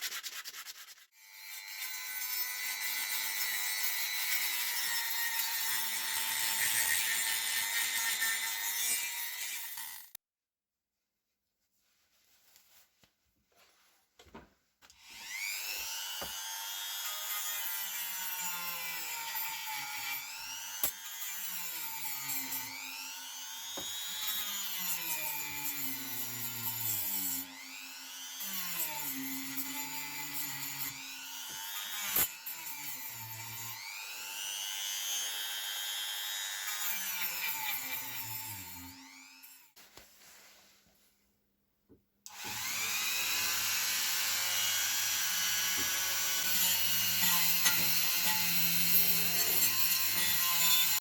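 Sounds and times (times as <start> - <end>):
small electric power tool running: 15.0 - 18.7, 42.3 - 51.0.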